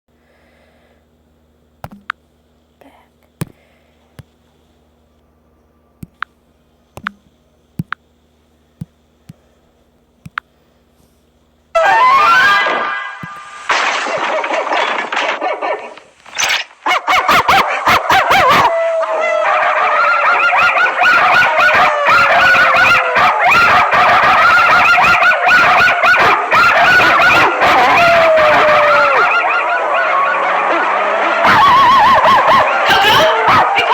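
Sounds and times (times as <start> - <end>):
sharp clicks: 1.8 - 2.2, 6.0 - 6.4, 7.0 - 8.1, 10.2 - 10.5
dog howling: 11.8 - 13.2, 16.9 - 33.9.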